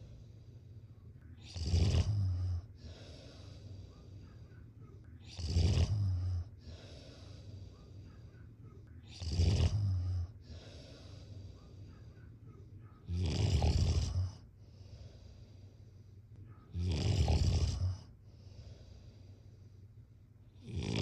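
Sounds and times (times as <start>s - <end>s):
quiet breathing: 0.0s - 21.0s
loud rumbling snores: 1.4s - 2.7s, 5.2s - 6.5s, 9.1s - 10.3s, 13.1s - 14.4s, 16.8s - 18.1s, 20.6s - 21.0s.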